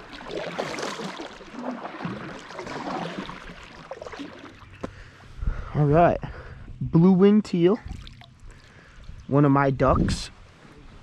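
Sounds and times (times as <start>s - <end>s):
water splashing around kayak: 0.0s - 5.2s, 7.8s - 9.2s.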